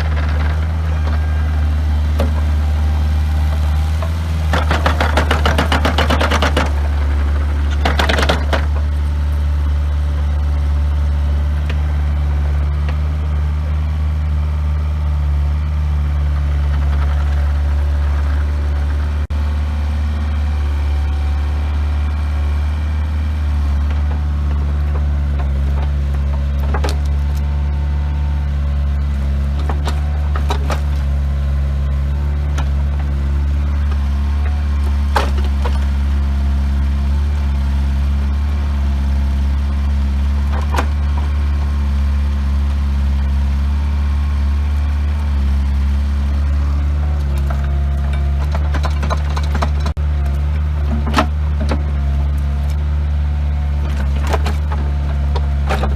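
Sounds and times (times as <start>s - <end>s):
excavator diesel engine running: 0.0s - 55.9s
metal clanks and knocks: 3.4s - 9.0s, 47.3s - 52.1s.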